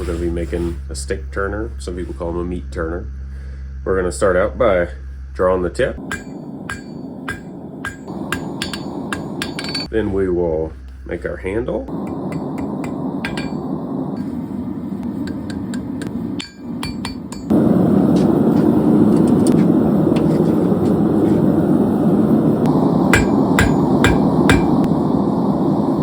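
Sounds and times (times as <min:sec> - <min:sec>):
hammer striking steel: 0:06.0 - 0:09.9, 0:11.9 - 0:13.8, 0:15.2 - 0:17.6, 0:23.1 - 0:24.9
steady rushing noise: 0:06.0 - 0:09.9, 0:11.9 - 0:26.0.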